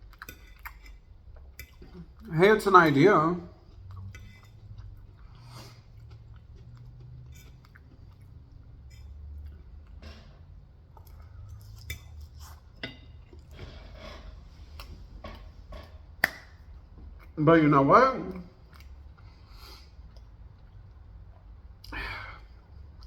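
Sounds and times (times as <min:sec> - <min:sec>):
person chewing food: 0:00.0 - 0:17.4, 0:18.3 - 0:23.0.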